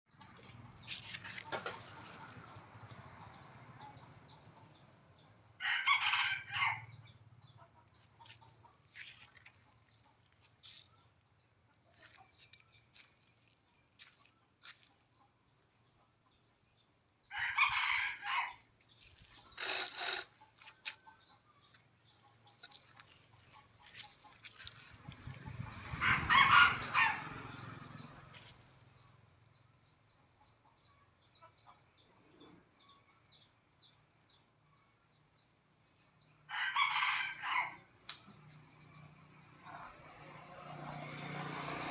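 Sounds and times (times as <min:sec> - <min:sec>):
rooster crowing: 0:05.6 - 0:06.9, 0:17.3 - 0:18.6, 0:26.0 - 0:27.3, 0:36.5 - 0:37.9.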